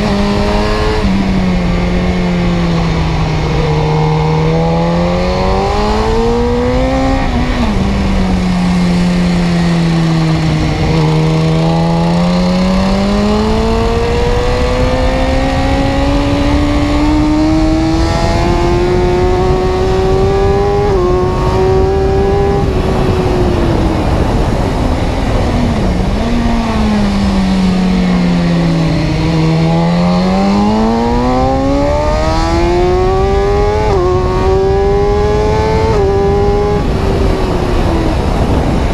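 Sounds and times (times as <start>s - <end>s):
road and wind noise: 0.0s - 38.9s.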